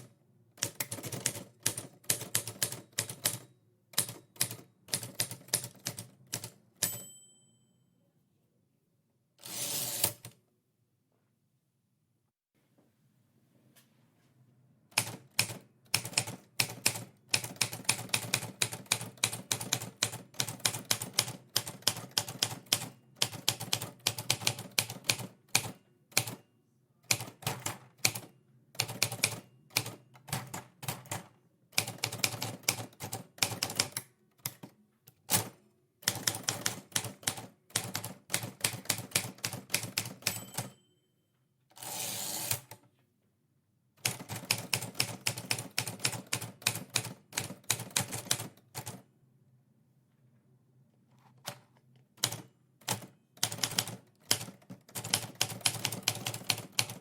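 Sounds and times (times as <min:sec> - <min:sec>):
typewriter carriage sliding: 0:09.4 - 0:10.3
typewriter keys clicking: 0:52.2 - 0:57.0.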